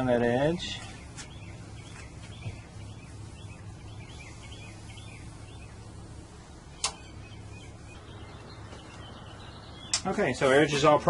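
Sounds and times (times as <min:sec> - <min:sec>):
small birds chirping: 0:00.0 - 0:11.0
steady low hum: 0:00.0 - 0:11.0
sharp click: 0:06.8 - 0:07.0.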